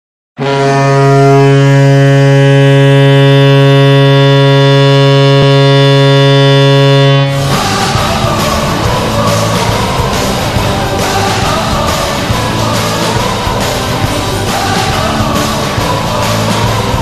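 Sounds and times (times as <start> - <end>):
hockey goal horn blast: 0.4 - 17.0
rock music with singing: 7.3 - 17.0.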